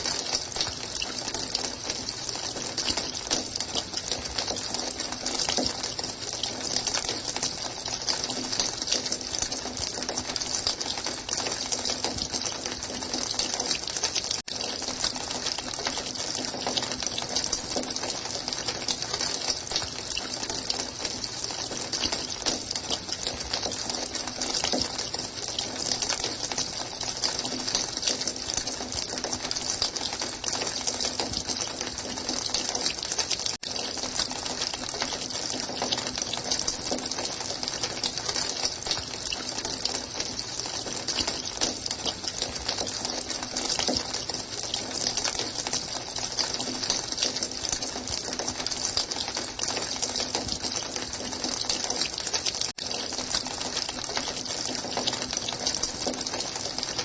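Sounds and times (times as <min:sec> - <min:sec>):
running water: 0:00.0 - 0:57.0.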